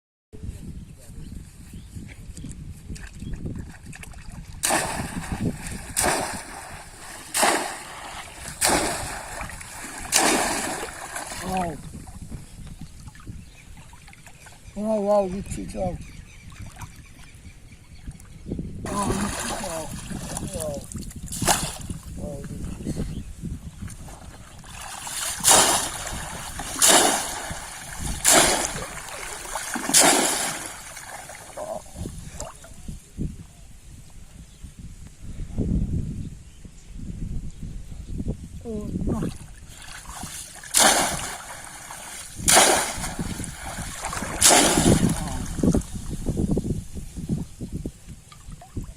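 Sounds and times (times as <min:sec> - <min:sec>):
splashes in shallow water: 0:03.0 - 0:12.2, 0:18.9 - 0:22.0, 0:24.1 - 0:32.8, 0:39.1 - 0:46.3.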